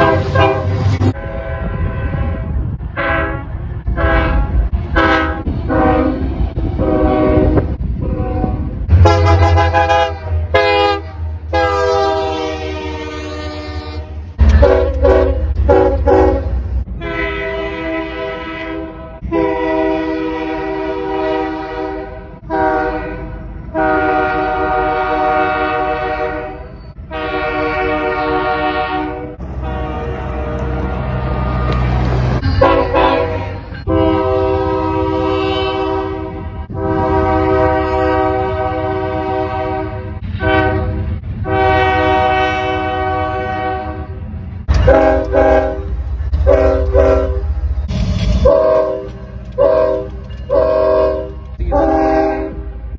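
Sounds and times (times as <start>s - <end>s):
locomotive air horn blasts: 0.0s - 47.6s, 48.4s - 52.9s
low rumble: 44.1s - 51.7s.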